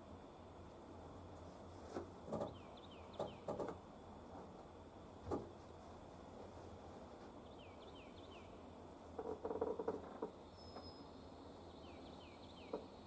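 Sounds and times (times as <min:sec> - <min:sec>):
small bird chirping: 0:10.5 - 0:11.1.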